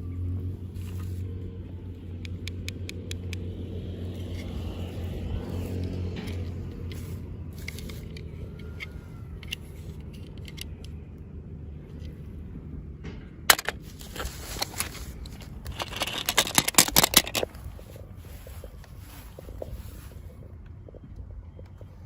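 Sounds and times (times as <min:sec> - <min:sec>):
plastic packaging crinkling: 0:13.5 - 0:18.5.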